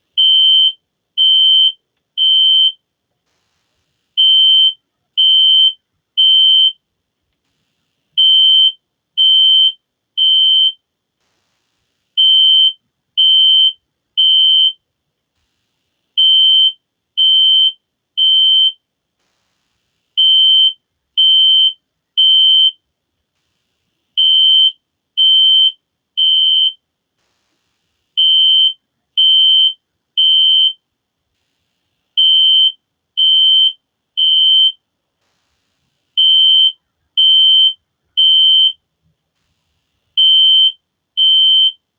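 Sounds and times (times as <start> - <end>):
fire alarm horn beeping: 24.2 - 26.8, 28.2 - 30.8, 32.2 - 34.8, 36.2 - 38.8.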